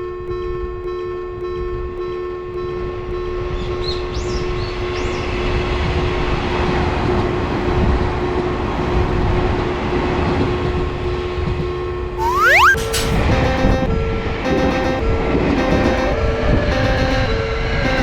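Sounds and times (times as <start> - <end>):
low two-note tone: 12.2 - 13.9.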